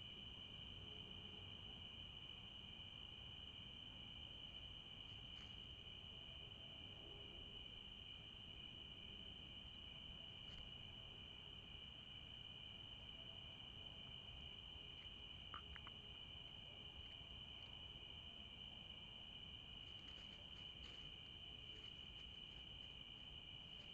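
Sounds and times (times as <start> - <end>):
crickets chirping: 0.0 - 23.9
faint ticks: 15.0 - 16.2.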